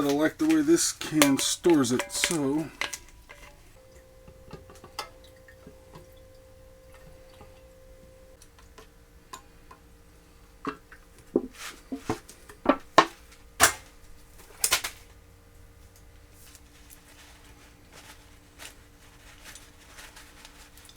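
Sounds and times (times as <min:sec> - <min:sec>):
small objects clicking and knocking: 0:00.0 - 0:03.7
faint steady hum: 0:00.0 - 0:20.9.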